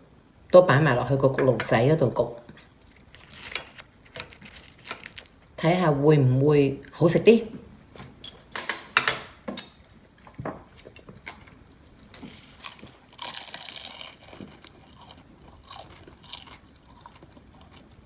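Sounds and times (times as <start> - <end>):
chewing: 2.4 - 5.6, 10.2 - 18.0
crunching food: 2.4 - 5.6, 11.2 - 18.0.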